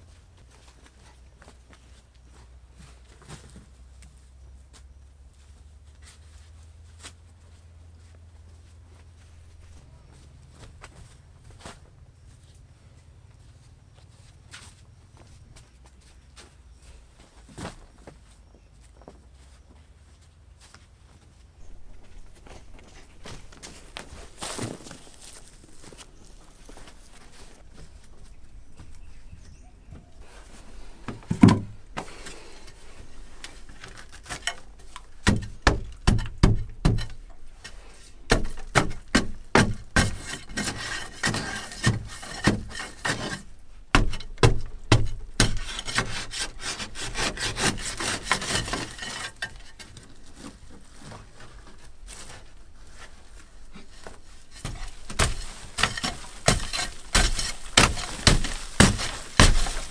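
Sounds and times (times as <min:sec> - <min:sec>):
hand tool scraping: 0:21.6 - 0:59.9.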